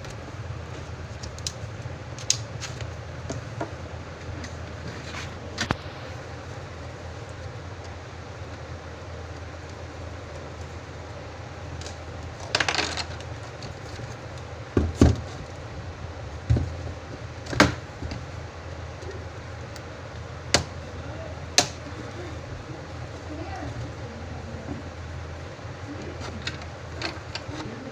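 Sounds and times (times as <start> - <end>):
steady low hum: 0.0 - 27.9.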